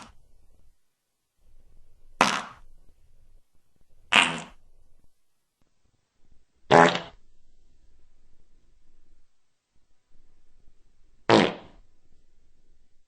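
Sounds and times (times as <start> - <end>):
fart sound effects: 2.2 - 2.6, 4.1 - 4.6, 6.7 - 7.2, 11.3 - 11.8.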